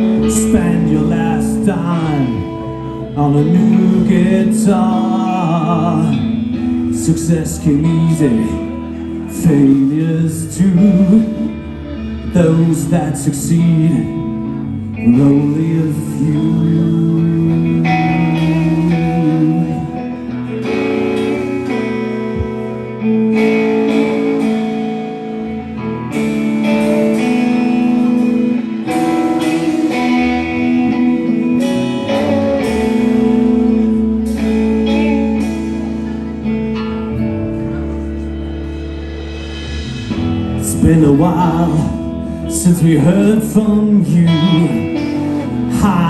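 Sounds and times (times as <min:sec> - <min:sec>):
live band playing: 0:00.0 - 0:46.0
sustained electric guitar notes: 0:00.0 - 0:46.0.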